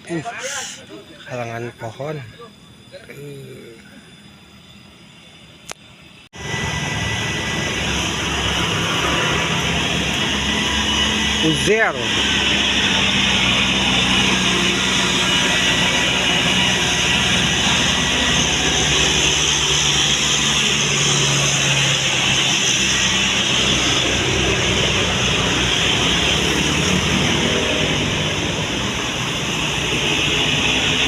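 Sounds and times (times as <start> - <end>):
road and tyre noise: 4.6 - 31.0
bus diesel engine under load: 6.2 - 31.0.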